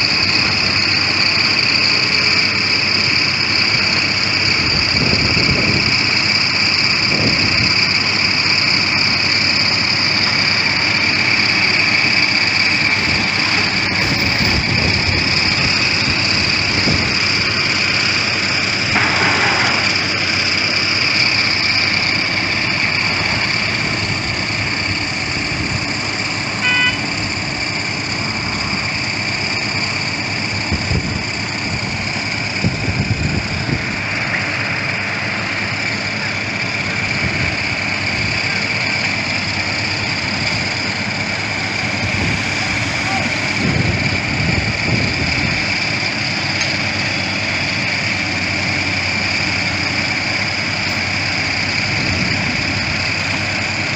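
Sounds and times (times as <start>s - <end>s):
construction machinery engine running: 0.0s - 53.9s
high whine: 0.0s - 53.9s
short beep: 26.6s - 27.1s.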